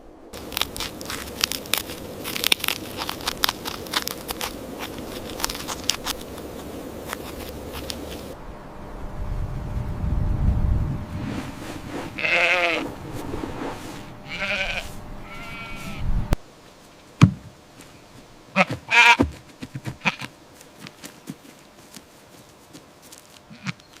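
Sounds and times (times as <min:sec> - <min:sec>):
animal bleating: 0:12.2 - 0:12.8, 0:14.2 - 0:16.1, 0:18.5 - 0:19.3, 0:20.0 - 0:20.3, 0:23.5 - 0:23.9.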